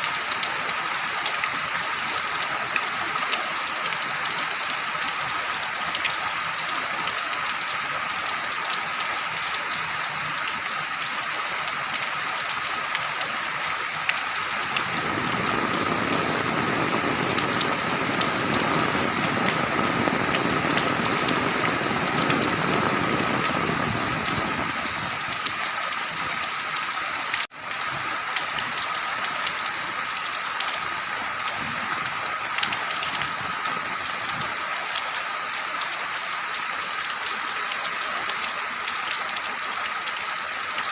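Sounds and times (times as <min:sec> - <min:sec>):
heavy rain hissing: 0:00.0 - 0:29.2
raindrops pattering: 0:00.0 - 0:40.9.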